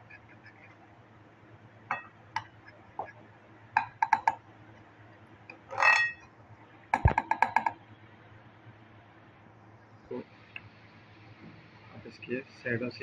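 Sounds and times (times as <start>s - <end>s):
spoon clinking against a bowl: 1.9s - 2.5s.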